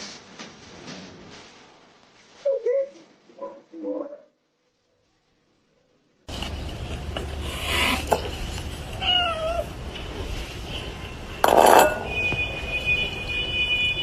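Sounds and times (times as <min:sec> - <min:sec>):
cat meowing: 0:08.9 - 0:09.8.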